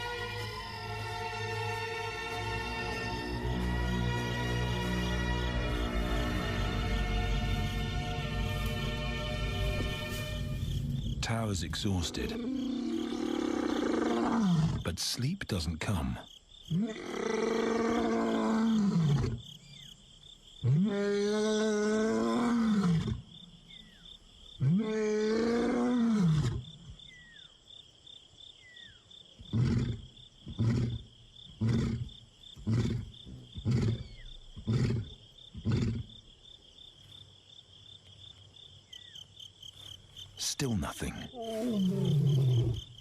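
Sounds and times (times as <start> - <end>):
lion grunting: 11.3 - 15.0, 29.5 - 36.1, 40.8 - 43.0
lion roaring: 12.0 - 14.9, 16.7 - 19.4, 20.6 - 23.2, 24.6 - 26.6, 41.3 - 43.0.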